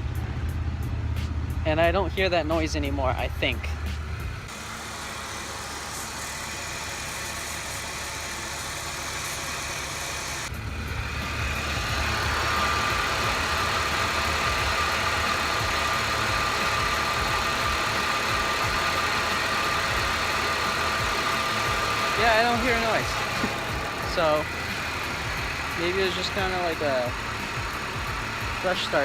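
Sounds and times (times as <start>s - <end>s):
car engine idling: 0.0s - 29.0s
steady high tone: 4.8s - 27.2s.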